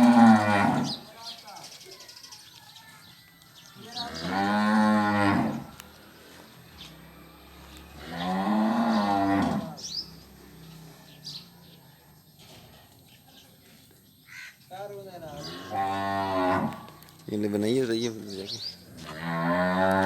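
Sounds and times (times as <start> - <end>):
cattle mooing: 0.0 - 1.0, 4.0 - 5.9, 7.5 - 9.8, 15.3 - 16.9, 19.0 - 20.0.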